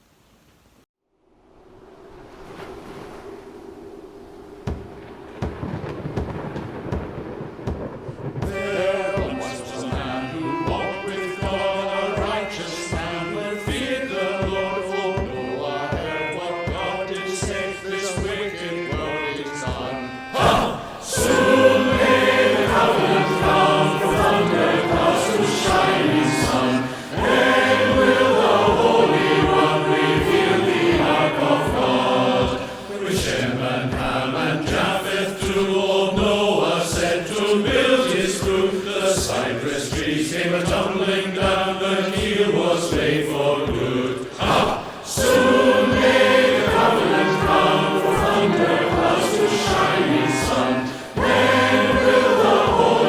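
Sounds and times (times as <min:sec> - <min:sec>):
choir singing: 0:08.4 - 0:53.0
instrumental accompaniment: 0:08.4 - 0:53.0
steady beat: 0:20.4 - 0:53.0.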